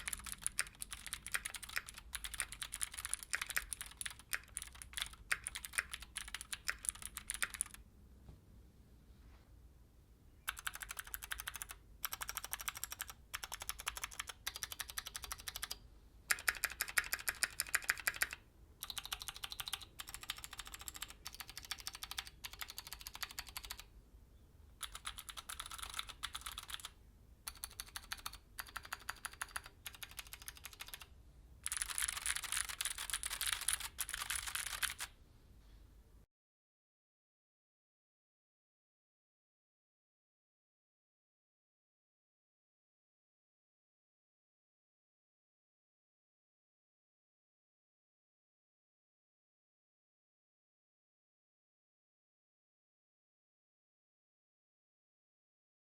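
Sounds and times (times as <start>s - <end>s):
mechanical keyboard typing: 0.0s - 7.8s, 10.5s - 23.9s, 24.8s - 35.1s.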